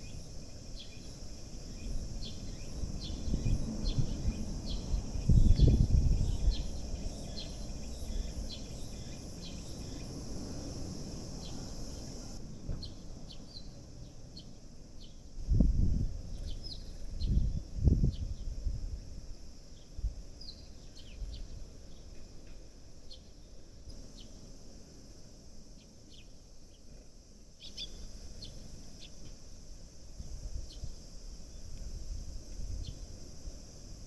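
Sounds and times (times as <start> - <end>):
sparrows chirping: 0.0 - 13.8
steady high hiss: 0.0 - 17.8, 18.8 - 34.0.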